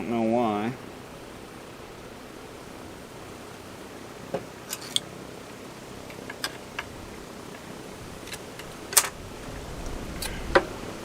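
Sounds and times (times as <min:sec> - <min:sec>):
faint steady hiss: 0:00.0 - 0:11.0
chainsaw handling clicks and knocks: 0:04.3 - 0:05.1, 0:06.1 - 0:06.9, 0:08.2 - 0:09.2.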